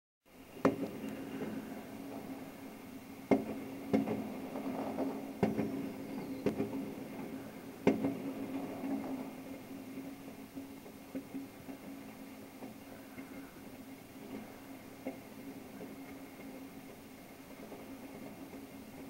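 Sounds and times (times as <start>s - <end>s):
steady low hum: 0.3s - 19.0s
fireworks bangs: 0.6s - 2.6s, 3.3s - 9.5s.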